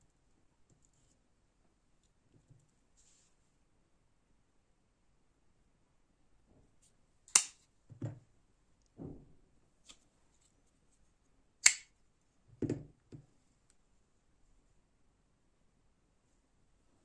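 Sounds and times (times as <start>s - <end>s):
folding knife blade clicks: 7.3s - 7.6s, 11.6s - 11.9s.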